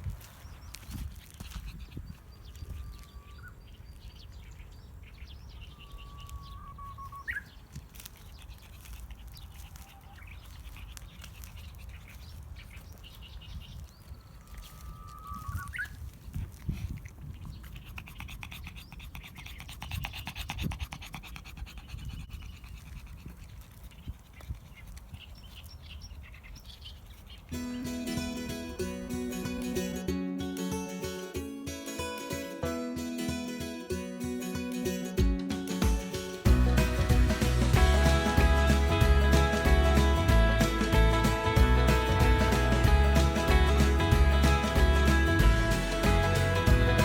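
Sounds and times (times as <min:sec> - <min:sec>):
wind rumble on microphone: 0:00.0 - 0:08.4, 0:10.3 - 0:27.1
small birds chirping: 0:00.0 - 0:28.4
bird whistling song: 0:02.5 - 0:03.7, 0:05.3 - 0:07.6, 0:13.4 - 0:16.0
dog panting: 0:08.0 - 0:12.5, 0:16.4 - 0:25.6.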